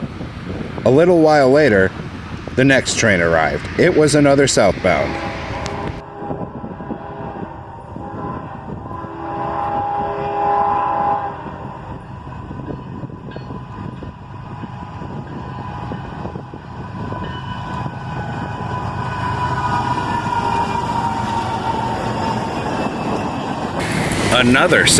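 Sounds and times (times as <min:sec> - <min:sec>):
diesel locomotive rumble: 0:00.0 - 0:24.9
train wheels on rails: 0:01.9 - 0:24.9
train horn chord: 0:04.9 - 0:12.5.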